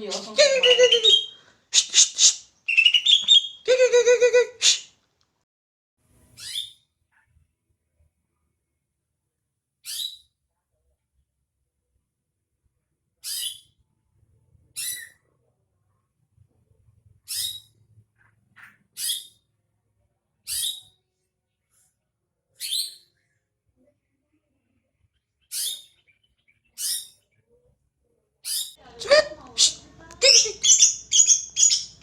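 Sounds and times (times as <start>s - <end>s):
bird calling high notes: 0.1s - 4.8s, 29.0s - 32.0s.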